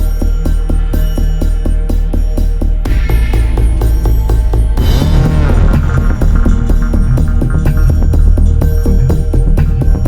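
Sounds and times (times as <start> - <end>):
electronic music with heavy bass: 0.0 - 10.0.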